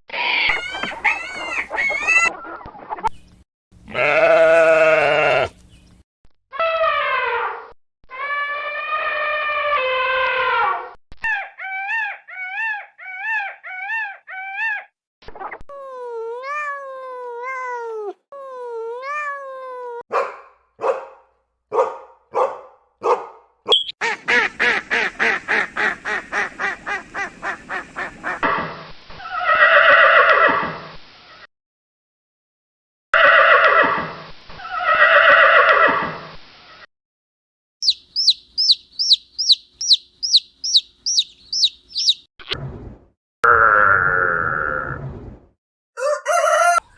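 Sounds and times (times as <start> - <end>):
long harsh animal call: 3.9 - 5.6
short high animal cries: 3.9 - 5.6
fast pulsed animal call: 37.8 - 42.2
rising and falling animal calls: 37.8 - 42.2.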